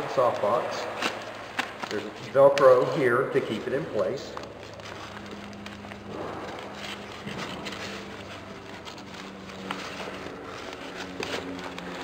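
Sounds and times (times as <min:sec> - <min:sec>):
fabric rustling: 0:04.0 - 0:12.0.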